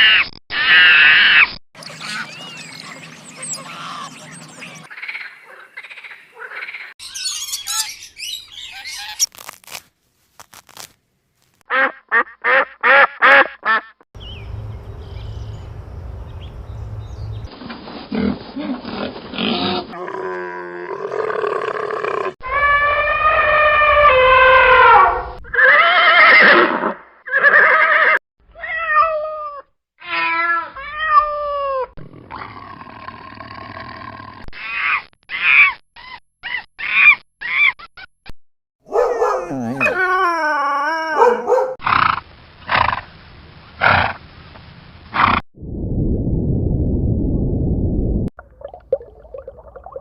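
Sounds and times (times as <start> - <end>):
animal calls: 0.0 - 9.3.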